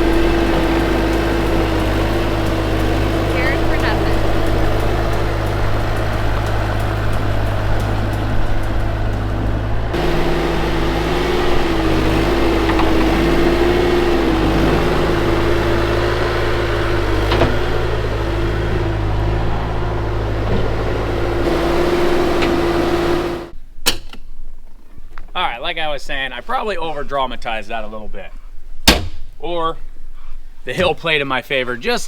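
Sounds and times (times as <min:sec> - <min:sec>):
steady mechanical whine: 0:00.0 - 0:23.5
diesel engine running: 0:00.0 - 0:23.6.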